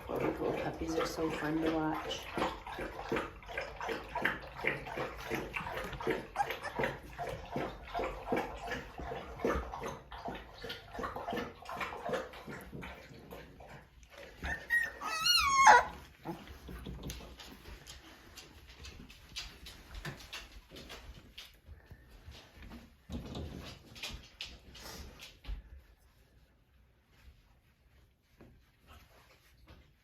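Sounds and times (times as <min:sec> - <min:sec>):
paws scratching and clicking: 0:00.0 - 0:30.0
puppies scuffling: 0:00.0 - 0:30.0
puppy whining: 0:05.2 - 0:07.7, 0:14.0 - 0:17.0.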